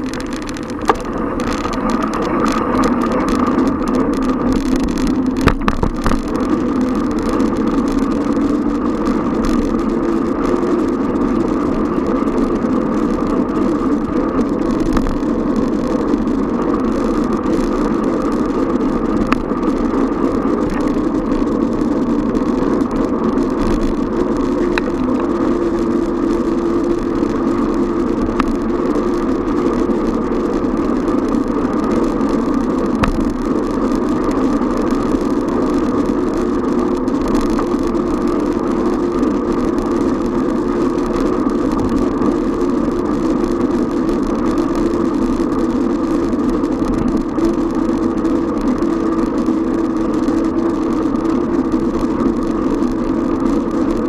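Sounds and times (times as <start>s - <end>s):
road and traffic rumble: 0.0s - 54.0s.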